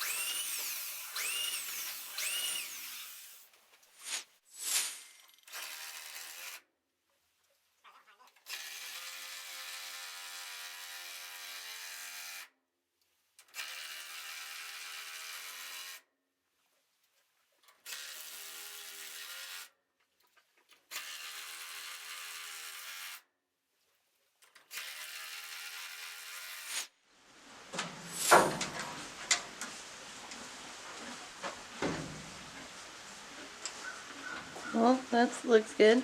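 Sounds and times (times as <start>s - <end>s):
cordless drill driving screws: 0.0s - 3.5s.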